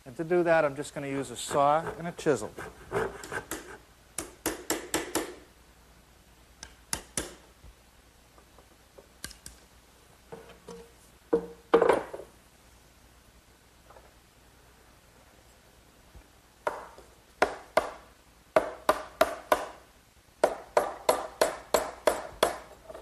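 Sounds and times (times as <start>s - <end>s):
handsaw and chisel cutting wood: 1.1s - 3.8s.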